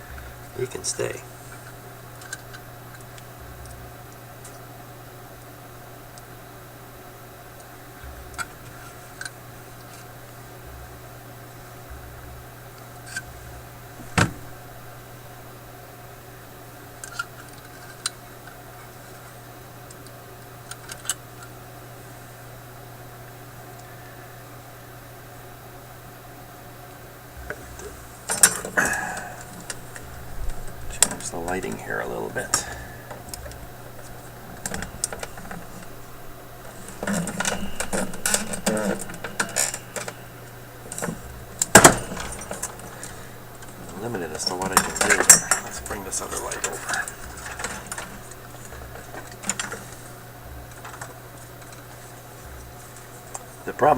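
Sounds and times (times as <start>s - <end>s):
low electrical hum: 0.0s - 53.9s
hand tools clicking: 27.5s - 50.1s.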